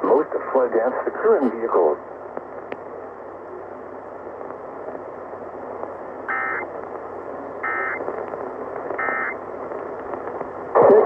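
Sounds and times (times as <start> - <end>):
radio static hiss: 0.0 - 11.0
warbling two-tone data squeal: 6.3 - 6.6, 7.6 - 8.0, 9.0 - 9.4.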